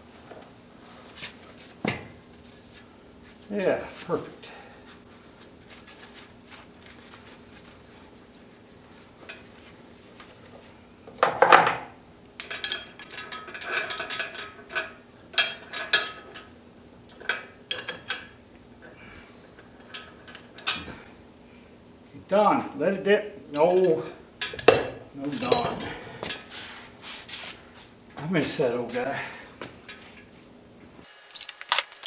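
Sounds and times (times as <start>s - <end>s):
faint steady hum: 0.0s - 32.0s
metal clanking and rattling: 12.4s - 16.5s.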